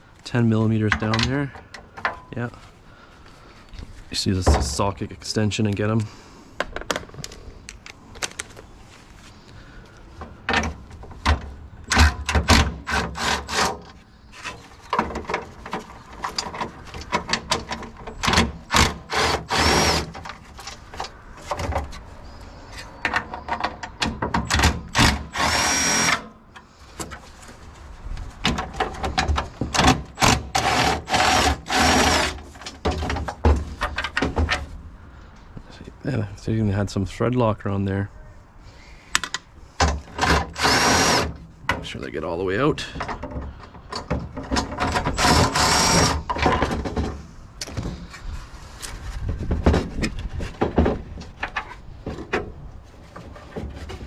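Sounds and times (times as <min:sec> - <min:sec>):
cordless drill whining: 0:18.7 - 0:20.2, 0:25.0 - 0:26.3, 0:30.2 - 0:32.4, 0:40.6 - 0:41.3, 0:45.2 - 0:46.2.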